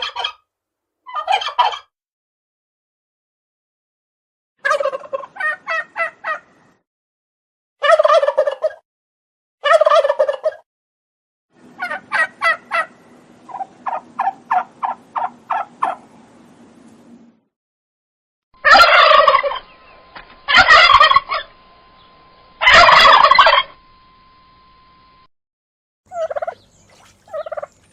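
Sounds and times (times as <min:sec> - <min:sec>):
short turkey calls: 0:00.0 - 0:00.4, 0:01.1 - 0:01.9, 0:04.6 - 0:06.5, 0:07.8 - 0:08.8, 0:09.6 - 0:10.6, 0:11.8 - 0:16.0, 0:18.6 - 0:21.5, 0:22.6 - 0:23.8, 0:26.1 - 0:27.8
turkeys gobbling: 0:00.0 - 0:00.4, 0:01.1 - 0:01.9, 0:04.6 - 0:06.5, 0:07.8 - 0:08.8, 0:09.6 - 0:10.6, 0:11.8 - 0:16.0, 0:18.6 - 0:21.5, 0:22.6 - 0:23.8, 0:26.1 - 0:27.8
low steady hum: 0:18.6 - 0:25.3.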